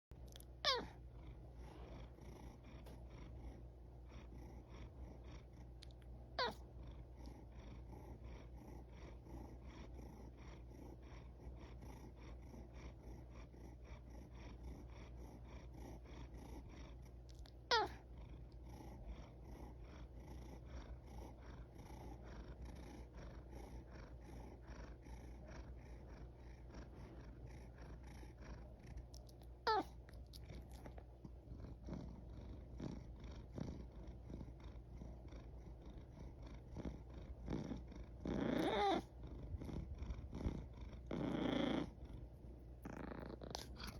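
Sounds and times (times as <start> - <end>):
cat purring: 0.2 - 43.9
cat yawning squeak: 0.6 - 0.9, 17.7 - 17.9.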